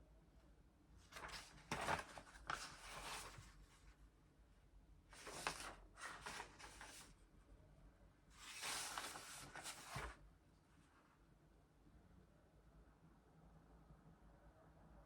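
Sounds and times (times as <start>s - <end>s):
faint rustling handling noises: 1.0s - 4.2s, 5.1s - 7.4s, 8.3s - 11.2s.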